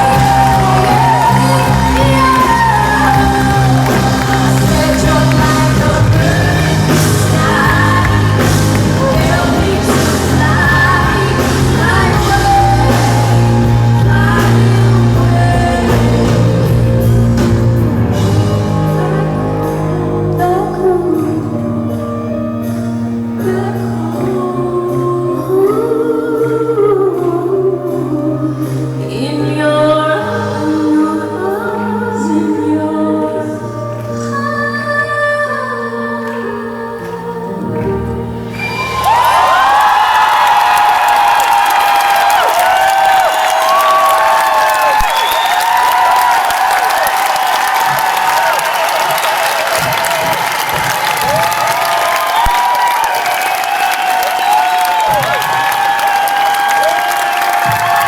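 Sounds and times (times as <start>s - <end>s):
woman singing: 0.0s - 22.8s, 23.4s - 38.4s
live pop-rock band playing: 0.0s - 58.0s.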